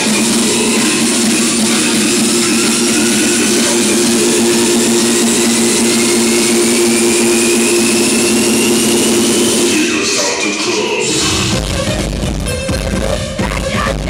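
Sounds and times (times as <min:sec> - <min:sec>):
low two-note drone: 0:00.0 - 0:09.8.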